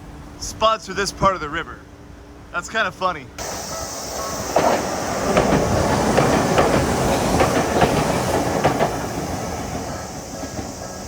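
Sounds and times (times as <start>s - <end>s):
train rumble: 0.0s - 11.0s
train wheels clacking: 3.4s - 11.0s.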